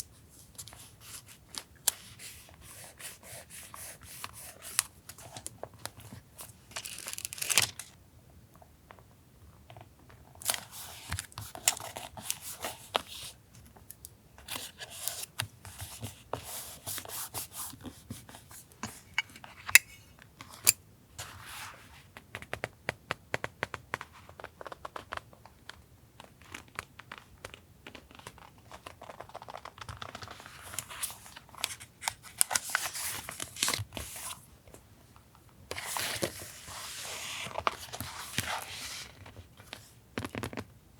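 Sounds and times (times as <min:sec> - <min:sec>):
paper tearing and crinkling: 0:06.8 - 0:07.9.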